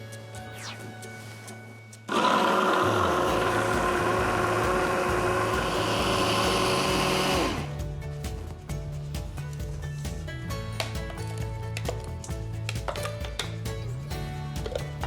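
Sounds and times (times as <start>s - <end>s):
background music: 0.0s - 15.0s
food processor motor whine: 2.1s - 7.8s.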